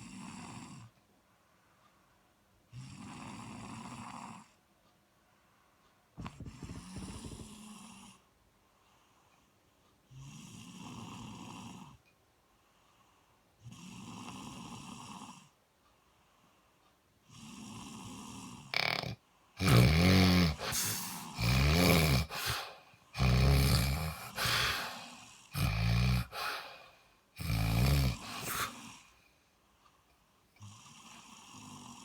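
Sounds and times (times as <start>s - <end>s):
soft breathy breaths: 0.0s - 32.0s
person snoring: 6.2s - 8.2s, 17.4s - 29.2s.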